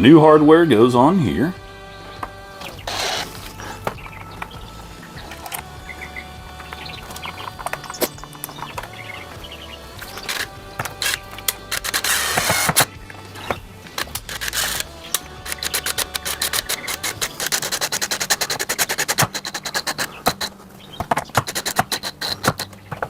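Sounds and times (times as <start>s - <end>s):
metal latch clicks and scrapes: 21.1s - 22.8s.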